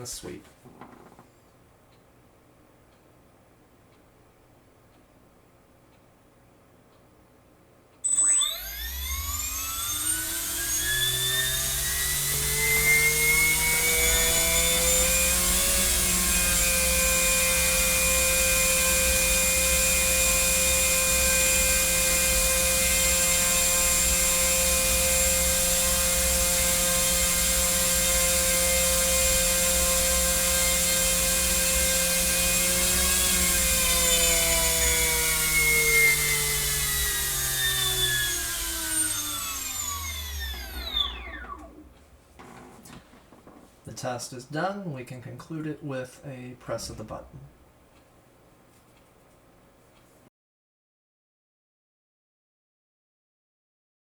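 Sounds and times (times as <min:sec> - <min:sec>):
electric motor whining: 0:08.1 - 0:43.0.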